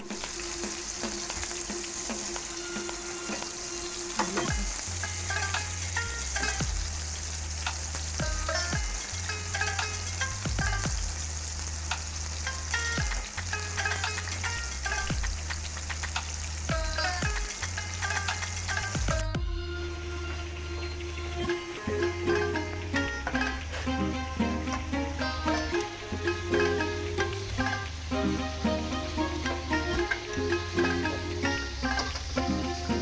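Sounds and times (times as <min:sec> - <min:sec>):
burgers sizzling in a pan: 0:00.0 - 0:19.3, 0:19.9 - 0:33.0
background music with bass: 0:00.0 - 0:33.0.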